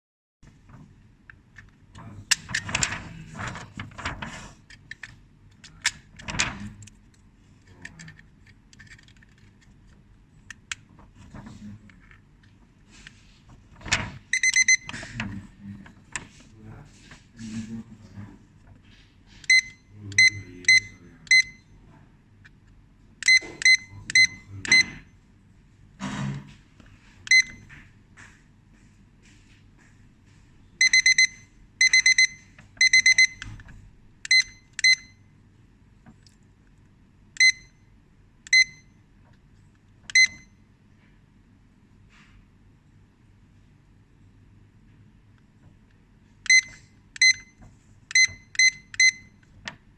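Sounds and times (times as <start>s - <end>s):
digital timer beeping: 14.3s - 14.9s, 19.5s - 21.6s, 30.8s - 33.5s, 46.5s - 47.5s.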